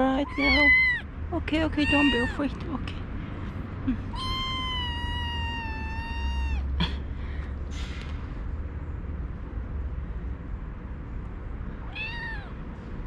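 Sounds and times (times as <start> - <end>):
kitten meowing: 0.2 - 1.1, 1.7 - 2.6, 4.1 - 6.7, 11.8 - 12.6.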